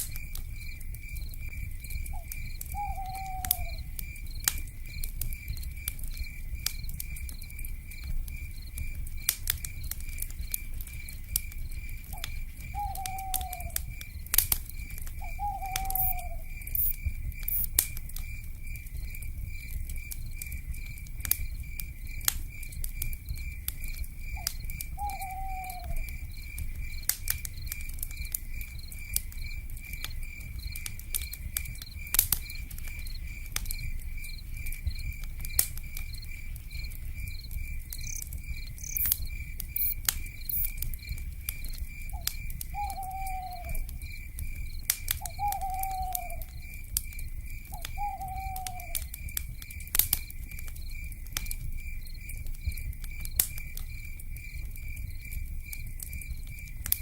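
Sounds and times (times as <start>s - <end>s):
campfire crackling and popping: 0.0s - 57.0s
insects chirping: 0.0s - 57.0s
owl calls: 2.1s - 3.8s, 12.7s - 13.8s, 15.2s - 16.5s, 24.4s - 26.0s, 42.1s - 43.9s, 45.2s - 46.5s, 47.7s - 49.1s.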